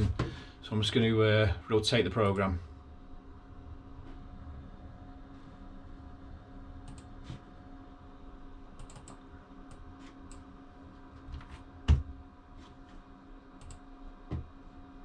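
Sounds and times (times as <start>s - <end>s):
steady low hum: 0.0s - 15.0s
keyboard and mouse clicks: 8.8s - 10.4s, 13.6s - 13.8s.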